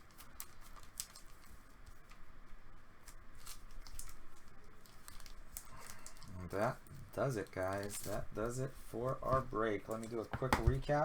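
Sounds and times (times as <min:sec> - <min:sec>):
cards clicking and rustling: 0:03.0 - 0:11.0.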